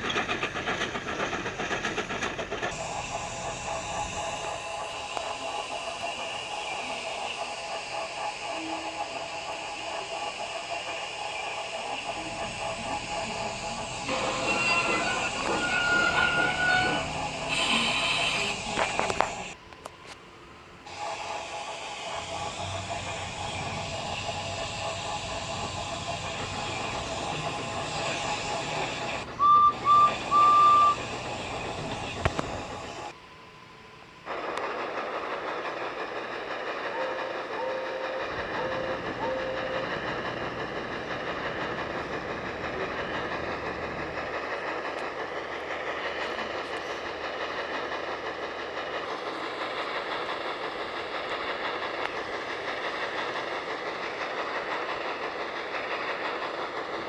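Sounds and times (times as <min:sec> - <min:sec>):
train running: 0:00.0 - 0:57.0
train whistle blasts: 0:14.1 - 0:19.3, 0:29.2 - 0:31.3.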